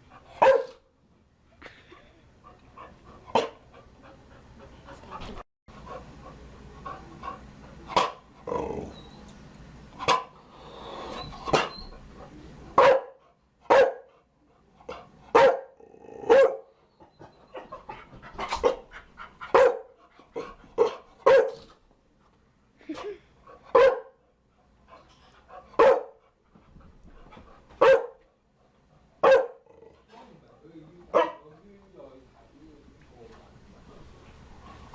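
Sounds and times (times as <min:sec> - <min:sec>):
dog barking: 0:00.4 - 0:00.8, 0:03.3 - 0:03.6, 0:08.0 - 0:08.2, 0:12.8 - 0:14.1, 0:15.3 - 0:16.7, 0:19.5 - 0:20.0, 0:20.8 - 0:21.7, 0:23.7 - 0:24.2, 0:25.8 - 0:26.2, 0:27.8 - 0:28.2, 0:29.2 - 0:29.7, 0:31.1 - 0:31.4.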